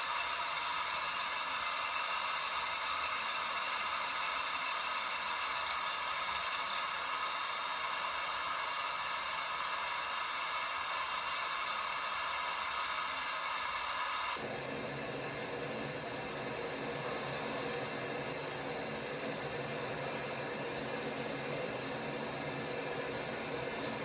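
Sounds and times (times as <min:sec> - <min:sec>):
washing machine running: 0:00.0 - 0:17.6.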